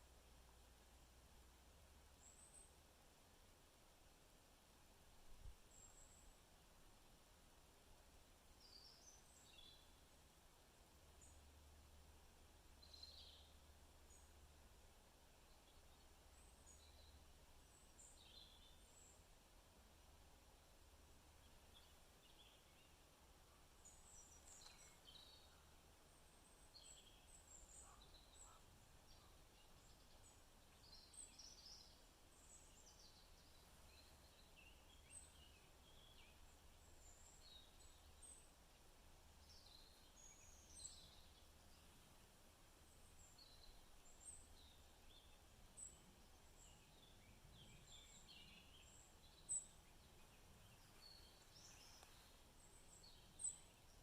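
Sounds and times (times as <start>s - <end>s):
birds chirping: 21.4s - 38.5s, 43.0s - 54.0s.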